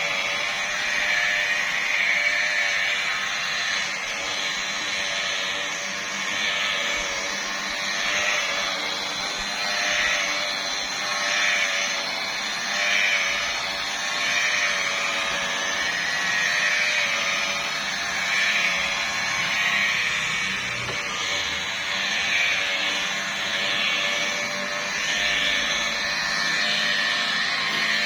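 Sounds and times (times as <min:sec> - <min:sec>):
car polisher motor whine: 0:00.0 - 0:28.0.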